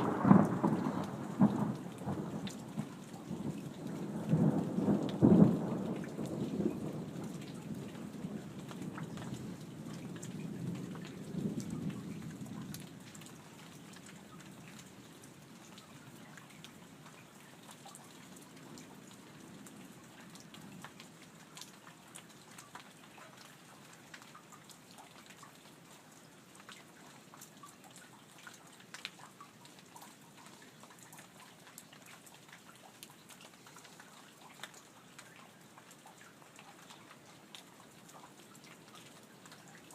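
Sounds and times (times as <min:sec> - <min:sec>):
thunder rumbling: 0:00.0 - 0:08.3
light steady rain: 0:00.0 - 0:39.9
water drips: 0:00.0 - 0:39.9.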